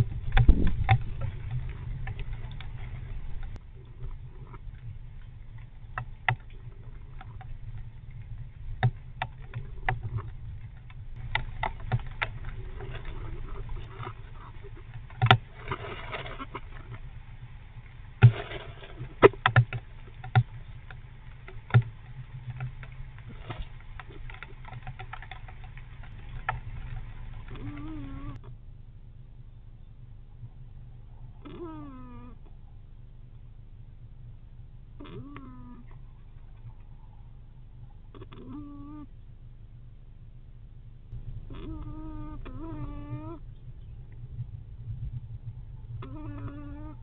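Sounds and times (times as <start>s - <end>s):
steady low hum: 0.0s - 47.0s
light taps and clicks: 19.2s - 27.1s.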